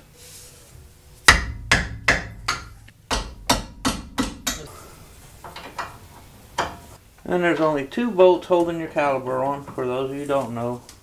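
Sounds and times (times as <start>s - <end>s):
sharp hammer blows: 1.3s - 5.1s.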